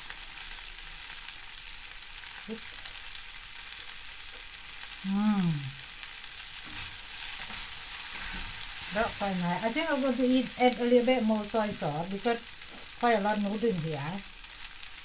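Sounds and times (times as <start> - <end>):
noodles sizzling in a pan: 0.0 - 15.0
person humming mmm: 5.0 - 5.9.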